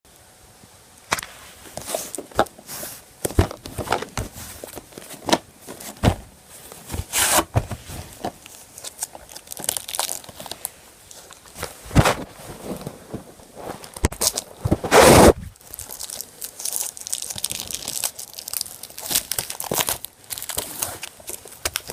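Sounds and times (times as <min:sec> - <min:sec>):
plastic wrap tearing and crinkling: 0:06.8 - 0:21.9.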